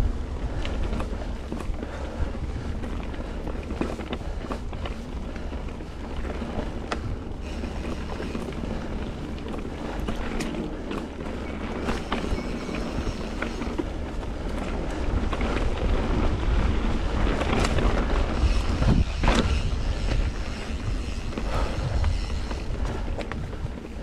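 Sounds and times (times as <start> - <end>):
bike clicks and rattles: 0.0 - 24.0
wind rumbling on microphone: 0.0 - 24.0
tyres hissing on dirt: 7.4 - 9.0, 11.4 - 14.0, 18.0 - 24.0.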